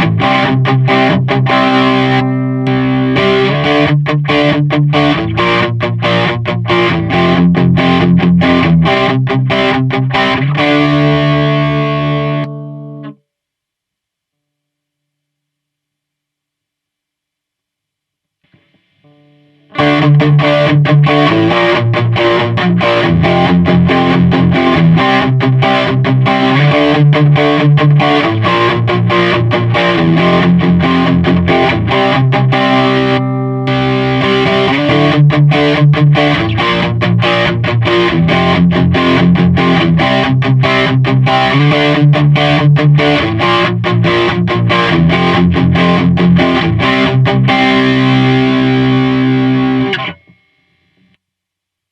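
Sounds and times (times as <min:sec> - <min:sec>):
overdriven electric guitar riff: 0:00.0 - 0:13.2, 0:18.5 - 0:51.1.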